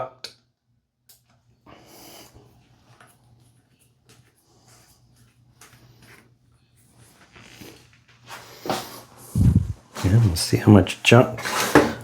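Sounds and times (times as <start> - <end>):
scraping and rustling of handling: 2.7 - 12.0
steady low hum: 8.4 - 10.6.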